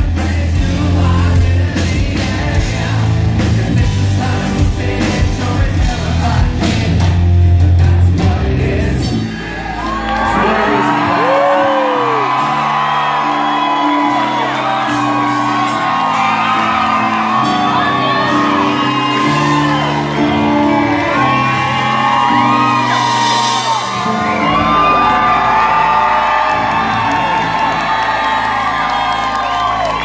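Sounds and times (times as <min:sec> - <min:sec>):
rock band playing sustained chords: 0:00.0 - 0:30.0
audience whooping and shouting: 0:09.1 - 0:30.0.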